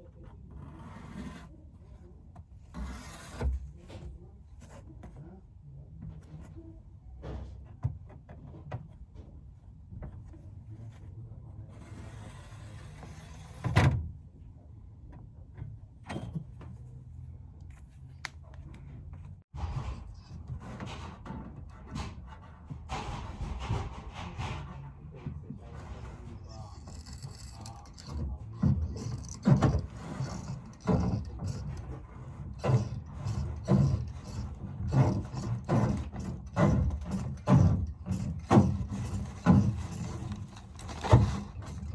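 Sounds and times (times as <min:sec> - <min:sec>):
rubbing and scraping: 0:00.0 - 0:05.4, 0:10.2 - 0:13.8, 0:19.0 - 0:41.9.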